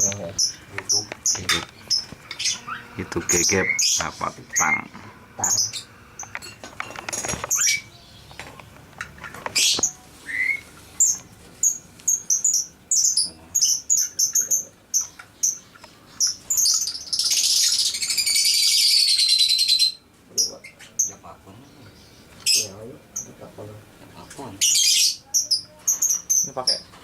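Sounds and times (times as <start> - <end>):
small bird chirping: 0.0 - 23.5, 24.2 - 27.0.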